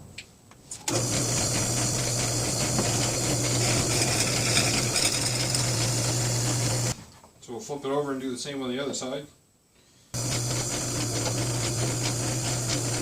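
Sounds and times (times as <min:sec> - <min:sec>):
drill press humming: 0:00.9 - 0:07.0, 0:10.2 - 0:13.0.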